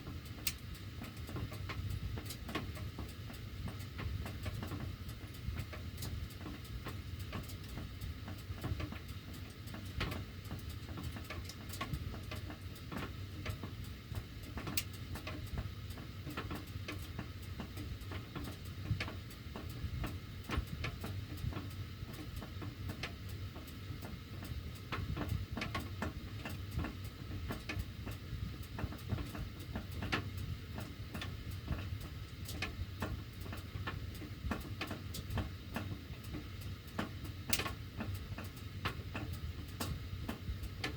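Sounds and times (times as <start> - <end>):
metal ductwork ticking and clicking: 0.2 - 13.6, 28.9 - 40.9.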